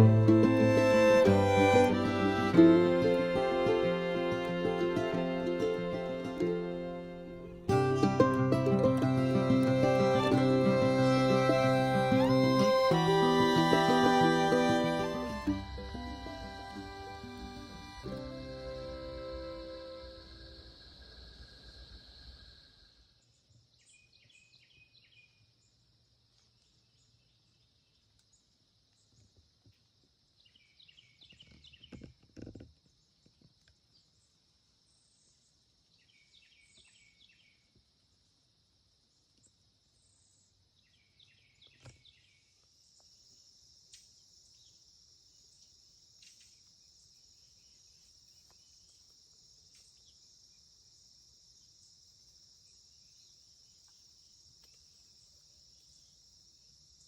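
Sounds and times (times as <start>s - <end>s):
bursts of chirps: 0.0s - 20.7s
cricket and insect chorus: 15.3s - 57.0s.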